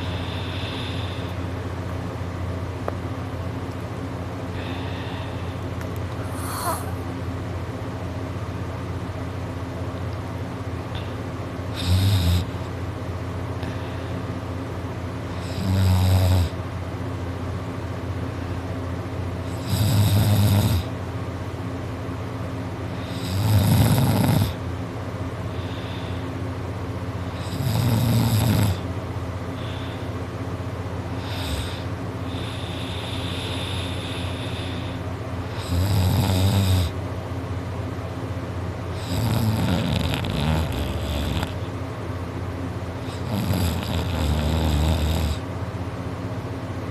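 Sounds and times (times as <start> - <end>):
steady low hum: 0.0 - 46.9
man snoring loudly: 6.3 - 7.0, 11.7 - 12.6, 15.3 - 16.6, 19.5 - 20.9, 23.0 - 24.6, 27.3 - 28.8, 31.2 - 34.1, 35.5 - 37.0, 39.0 - 41.6, 43.0 - 45.4.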